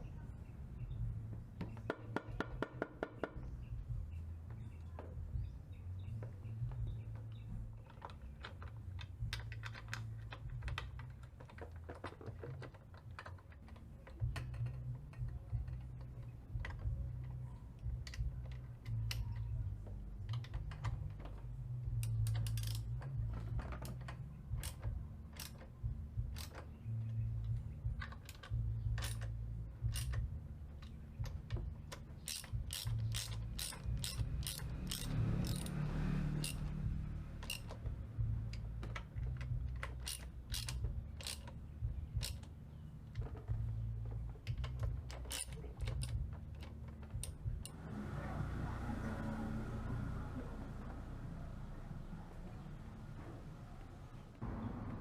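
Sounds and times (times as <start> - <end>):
ratchet wrench clicking: 12.6 - 17.3, 22.0 - 26.7, 27.4 - 43.6, 44.4 - 47.8.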